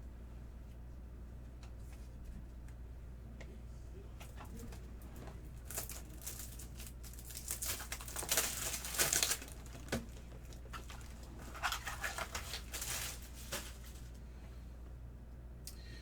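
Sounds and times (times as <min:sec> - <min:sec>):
plastic wrapping rustling and crinkling: 0:04.5 - 0:14.2.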